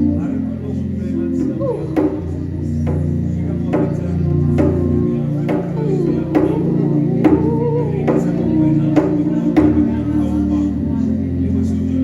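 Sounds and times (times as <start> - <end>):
background music with keyboard chords: 0.0 - 12.0
sharp percussion hits: 1.9 - 10.0.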